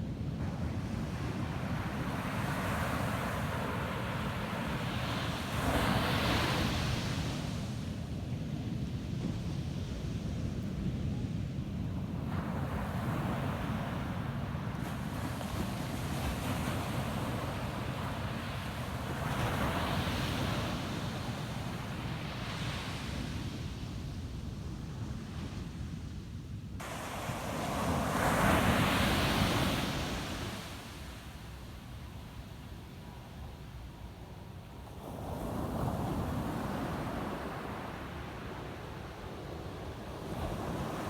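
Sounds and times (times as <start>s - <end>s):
wind rumble on microphone: 0.0s - 41.0s
ocean waves breaking: 26.8s - 31.6s.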